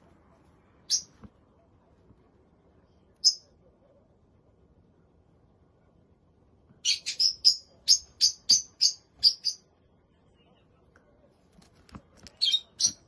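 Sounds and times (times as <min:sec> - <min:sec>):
parrot chirping: 0:00.9 - 0:01.2, 0:03.2 - 0:03.5, 0:06.8 - 0:09.7, 0:12.3 - 0:13.0.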